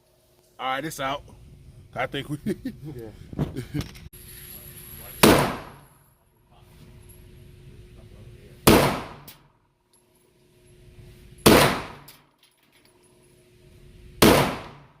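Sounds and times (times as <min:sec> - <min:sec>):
pistol shots: 0:05.2 - 0:05.8, 0:08.6 - 0:09.4, 0:11.4 - 0:12.1, 0:14.2 - 0:14.9.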